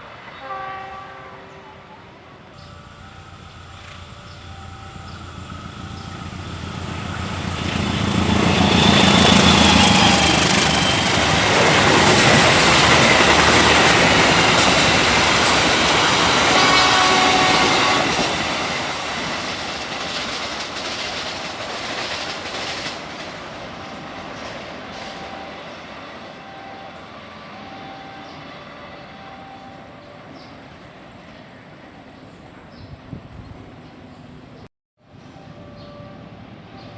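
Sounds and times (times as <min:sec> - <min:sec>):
train wheels rumbling on rails: 0:02.6 - 0:26.7.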